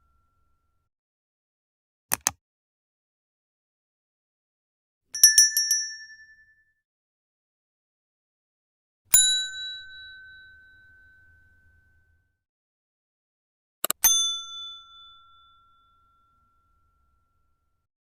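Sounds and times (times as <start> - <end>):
bell ding: 5.2 - 6.7, 9.2 - 11.9, 14.0 - 17.6.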